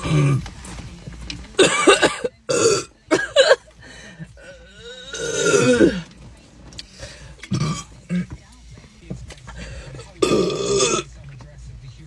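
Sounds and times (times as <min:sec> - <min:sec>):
person burping loudly: 0:00.0 - 0:00.4, 0:01.6 - 0:02.9, 0:04.8 - 0:06.0, 0:07.5 - 0:08.3, 0:10.2 - 0:11.1.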